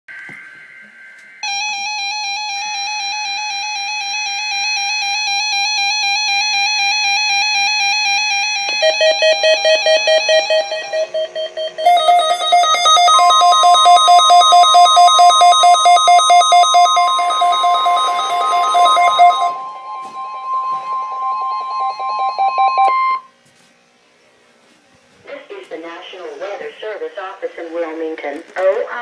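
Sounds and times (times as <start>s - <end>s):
weather radio alarm beeping: 8.6s - 23.3s
buzzy data bursts: 9.3s - 23.2s.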